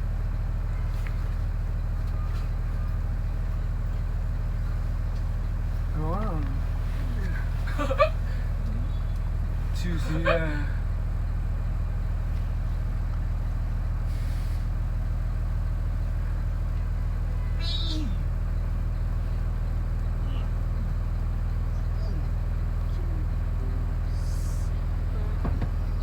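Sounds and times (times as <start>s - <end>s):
traffic engine rumble: 0.0s - 26.0s
air brake hisses: 14.1s - 14.7s.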